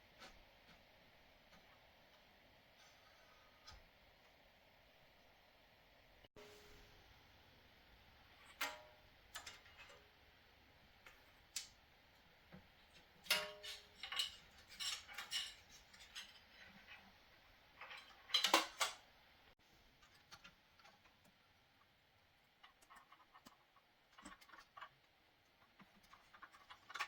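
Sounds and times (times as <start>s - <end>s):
metal hardware parts clinking: 13.2s - 16.4s.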